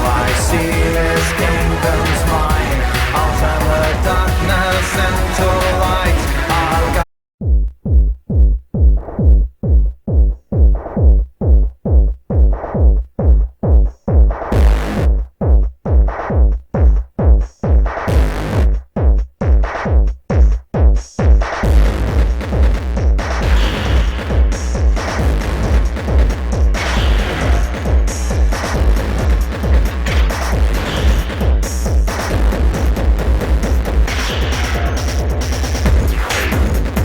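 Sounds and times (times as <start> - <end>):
noise sweeps: 0.0 - 7.0
synth pulsing: 0.0 - 7.0
electronic music: 0.0 - 7.1, 21.4 - 37.0
drum machine kick: 0.0 - 37.0.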